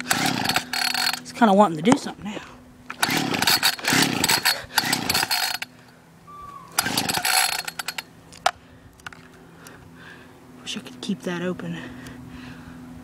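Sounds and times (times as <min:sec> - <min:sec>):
recoil starter pull whirring: 0:00.0 - 0:01.3, 0:02.9 - 0:06.0, 0:06.7 - 0:09.1.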